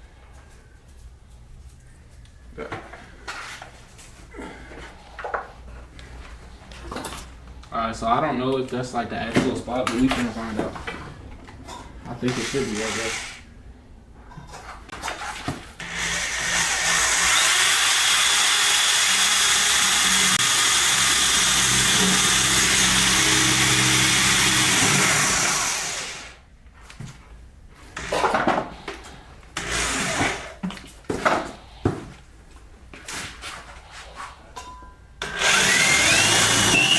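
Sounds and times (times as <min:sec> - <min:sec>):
power drill drilling metal: 0:12.2 - 0:13.4, 0:15.8 - 0:26.4, 0:29.6 - 0:30.5, 0:35.2 - 0:36.9
short scraping bursts: 0:12.2 - 0:13.5.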